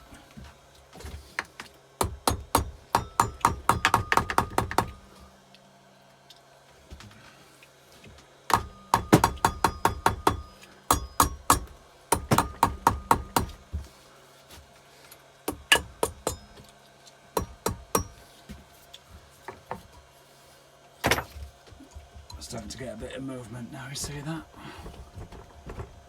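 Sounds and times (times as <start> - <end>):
hammer tapping on metal: 2.0 - 5.0, 8.5 - 13.6, 15.5 - 16.6, 17.4 - 18.2.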